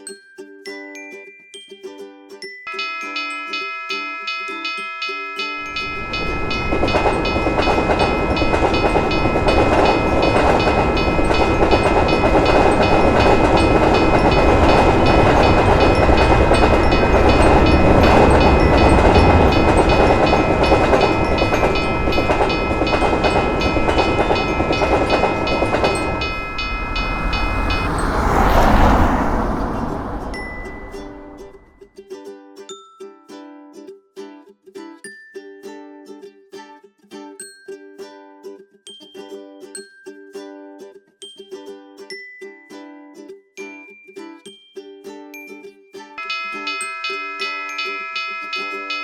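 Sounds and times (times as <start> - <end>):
railroad crossing bell ringing: 2.7 - 31.7, 46.2 - 49.0
train rumbling past: 5.6 - 31.8.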